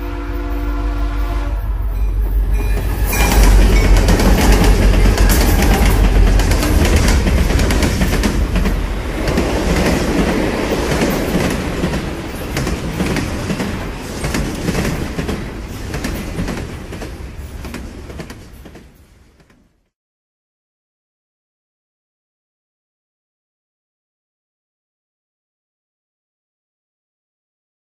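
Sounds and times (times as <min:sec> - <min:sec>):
train rumbling on rails: 0:00.0 - 0:19.9
wheels clacking over rail joints: 0:02.1 - 0:19.6.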